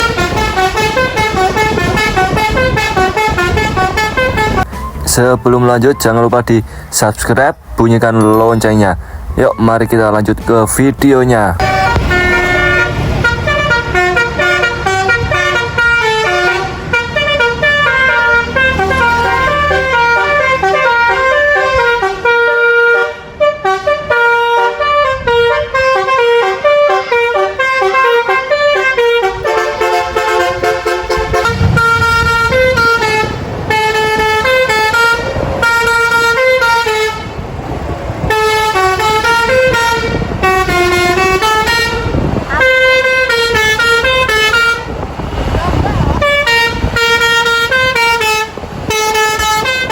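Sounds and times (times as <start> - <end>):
musical bus horn melody: 0.0 - 6.3, 11.6 - 37.6, 38.2 - 49.9
low rumble: 30.6 - 35.7.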